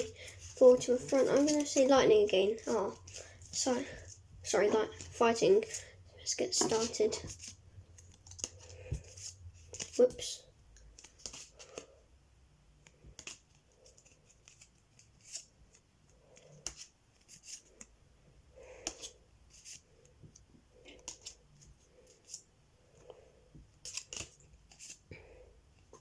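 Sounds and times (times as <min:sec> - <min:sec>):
cards flipping: 0:00.0 - 0:01.9, 0:06.5 - 0:10.2, 0:10.9 - 0:11.9, 0:12.9 - 0:15.5, 0:20.9 - 0:21.4, 0:23.8 - 0:25.1.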